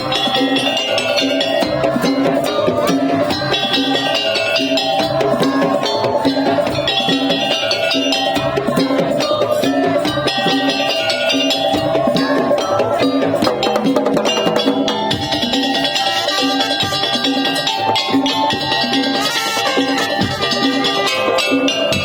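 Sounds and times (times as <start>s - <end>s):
percussion ensemble playing: 0.0s - 22.0s.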